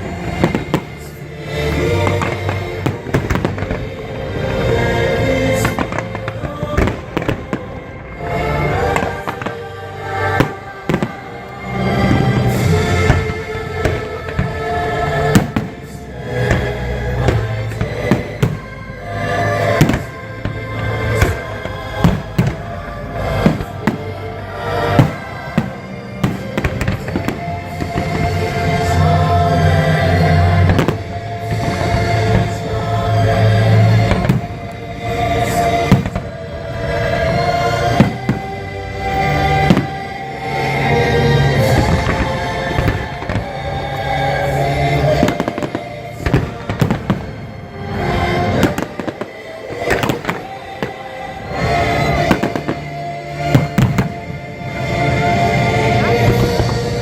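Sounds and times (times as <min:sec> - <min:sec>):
fireworks bangs and crackles: 0:00.0 - 0:57.0
loud show music: 0:00.0 - 0:57.0
firework booms: 0:24.9 - 0:28.5, 0:30.6 - 0:32.6, 0:34.0 - 0:34.7, 0:35.4 - 0:36.4, 0:37.9 - 0:38.6, 0:39.2 - 0:40.1, 0:45.1 - 0:47.4, 0:48.5 - 0:54.3.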